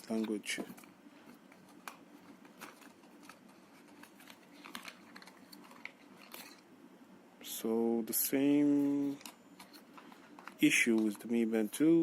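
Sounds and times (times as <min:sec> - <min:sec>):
packaging rustling and clicking: 0:00.0 - 0:06.6, 0:08.8 - 0:11.4.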